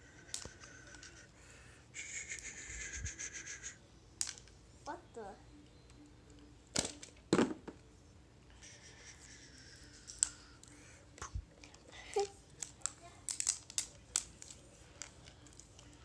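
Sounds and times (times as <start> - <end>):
plastic wrapping crinkling: 12.6 - 15.9.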